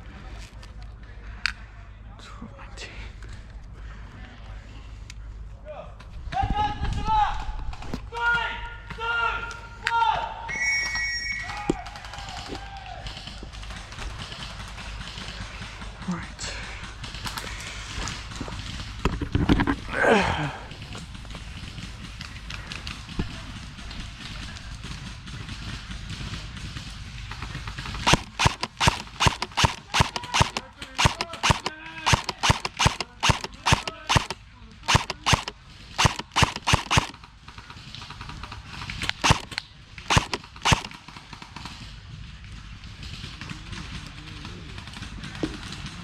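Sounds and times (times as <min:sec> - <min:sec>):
airsoft gun shots: 0:28.1 - 0:37.2, 0:39.0 - 0:41.0.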